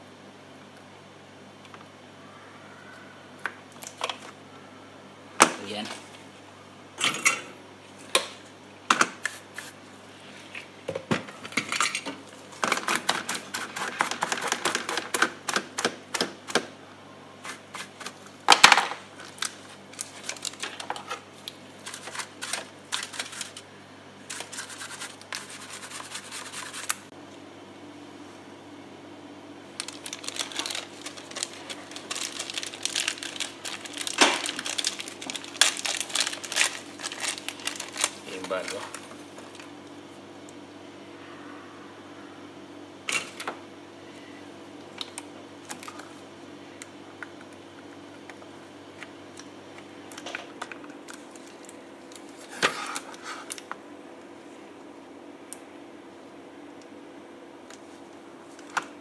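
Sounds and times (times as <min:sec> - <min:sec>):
steady low hum: 0:15.0 - 0:59.0.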